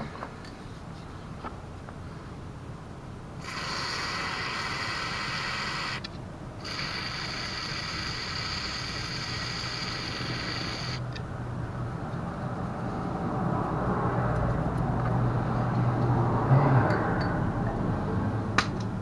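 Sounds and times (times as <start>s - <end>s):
aerosol spray can hissing: 3.4s - 6.0s, 6.6s - 11.0s.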